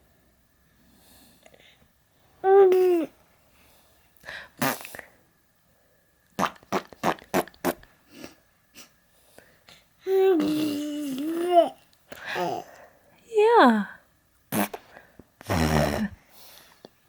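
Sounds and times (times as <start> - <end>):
baby blowing raspberries: 4.6 - 5.1, 6.4 - 8.9, 14.5 - 16.2
baby long vocal sound: 10.0 - 12.8.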